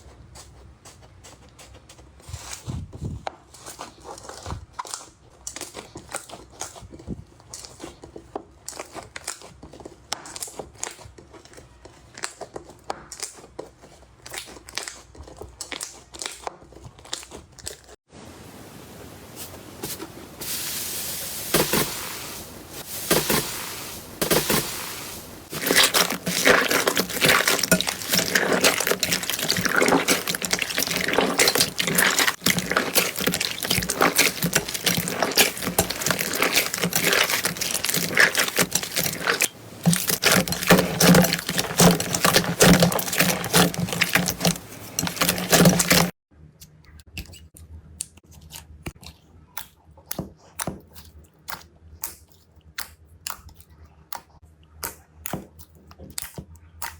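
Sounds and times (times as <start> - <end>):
slime wet clicking and popping: 48.8 - 56.9.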